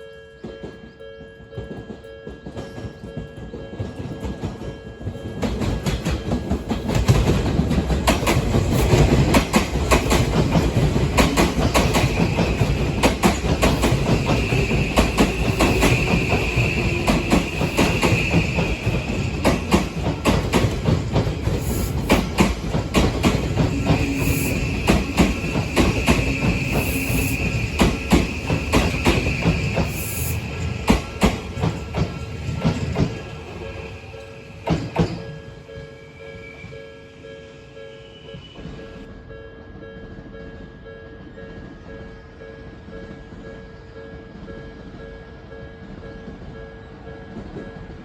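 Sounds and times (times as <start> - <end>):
train wheels clattering: 0.4 - 36.0.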